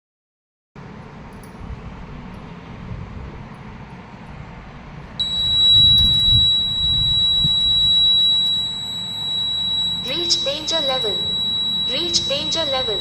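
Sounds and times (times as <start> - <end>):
high-pitched electronic alarm buzzer: 5.2 - 13.0.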